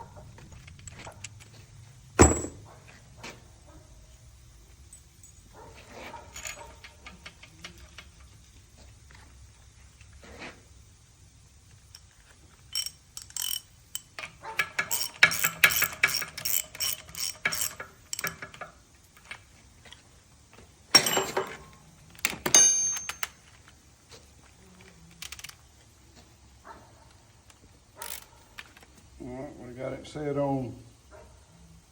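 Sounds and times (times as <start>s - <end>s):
metallic clanks: 2.2s - 2.8s, 20.9s - 23.5s
ratchet wrench clicking: 11.7s - 19.4s, 27.5s - 28.8s.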